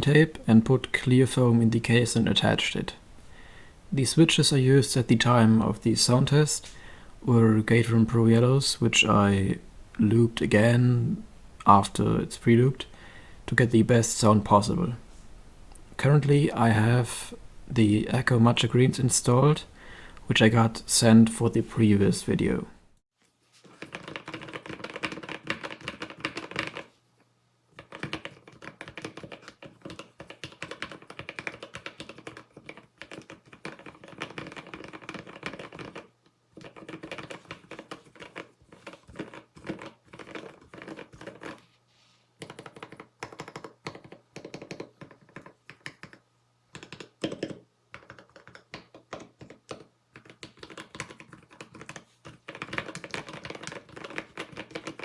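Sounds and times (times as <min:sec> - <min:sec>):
fast keyboard typing: 0:23.8 - 0:26.9, 0:27.8 - 0:41.6, 0:42.4 - 0:55.0.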